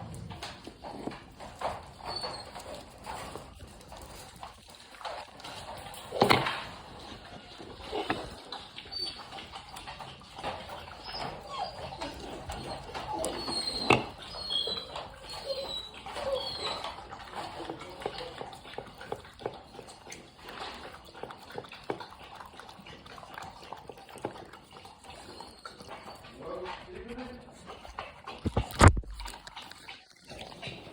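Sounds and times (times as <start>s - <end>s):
teeth scraping on bone: 0.0s - 30.9s
puppy squeaking: 1.8s - 3.0s, 7.9s - 9.9s, 10.7s - 18.4s, 25.1s - 27.4s.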